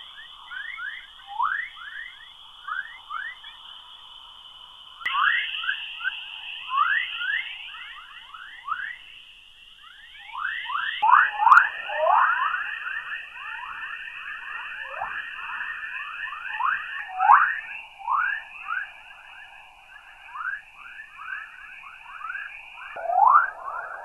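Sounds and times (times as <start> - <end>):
steady high hiss tone: 0.0 - 24.0.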